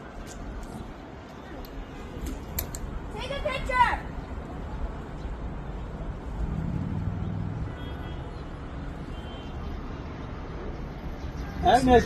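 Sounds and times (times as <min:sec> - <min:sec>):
traffic rumble: 0:00.0 - 0:12.0
vehicle engine hum: 0:06.0 - 0:09.0.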